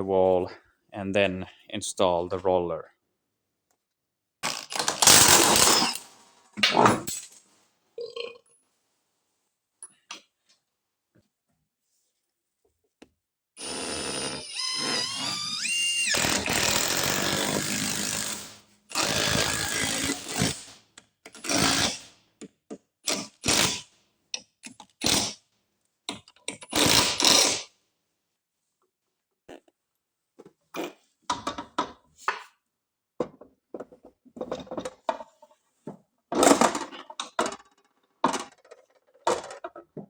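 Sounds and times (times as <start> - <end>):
power drill whining: 4.5 - 6.0, 13.6 - 22.0, 26.7 - 27.5.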